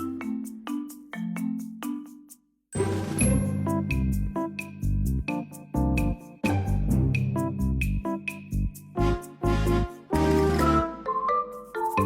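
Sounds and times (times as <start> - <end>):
bouncy keyboard and bass music: 3.4 - 12.0.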